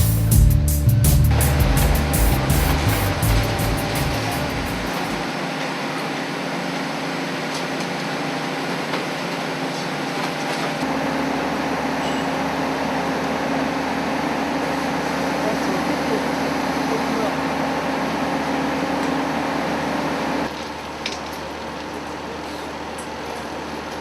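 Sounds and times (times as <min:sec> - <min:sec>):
deeper hum: 0:00.0 - 0:05.3
rail vehicle running: 0:00.0 - 0:20.5.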